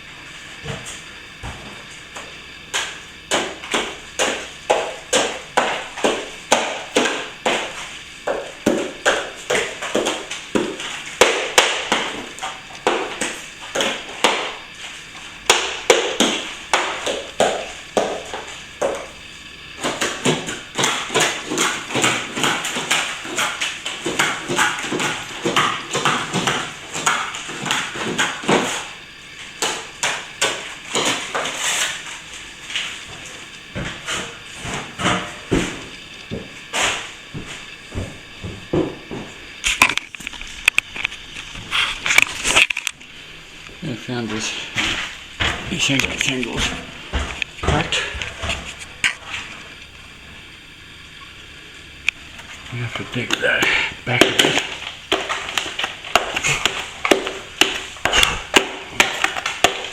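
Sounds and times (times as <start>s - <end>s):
hand tool striking plaster: 2.7s - 14.6s, 15.5s - 19.1s, 19.8s - 28.9s, 29.6s - 32.0s, 53.6s - 59.9s.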